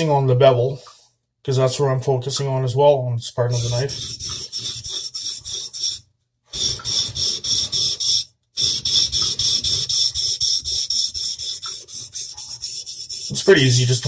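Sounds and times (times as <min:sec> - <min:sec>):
knife rasping on whetstone: 0:03.6 - 0:13.8.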